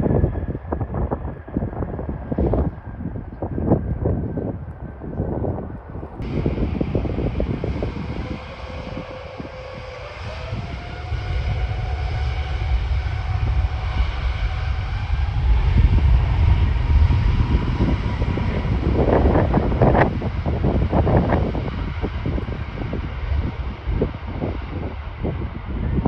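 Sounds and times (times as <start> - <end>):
wind buffeting microphone: 0.0 - 26.0
jet engines spooling up: 6.2 - 26.0.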